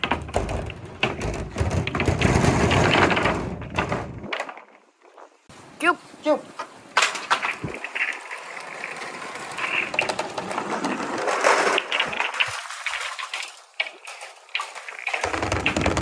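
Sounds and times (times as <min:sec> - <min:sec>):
balls rattling on wooden track: 0:00.0 - 0:04.7, 0:07.0 - 0:16.0.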